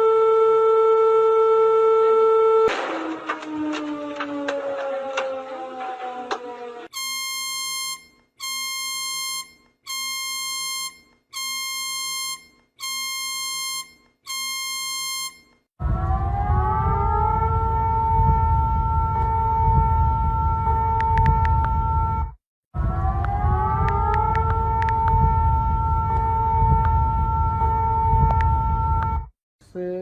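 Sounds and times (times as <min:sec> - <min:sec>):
warning siren: 0:00.0 - 0:29.3
long electronic beeps: 0:06.9 - 0:15.6.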